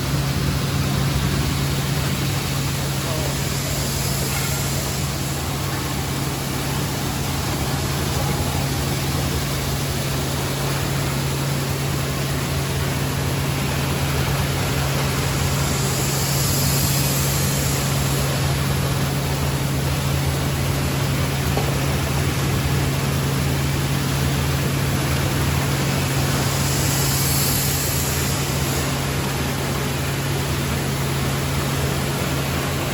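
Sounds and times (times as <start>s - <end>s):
even rushing noise: 0.0s - 21.1s
milling machinery humming: 0.0s - 32.9s.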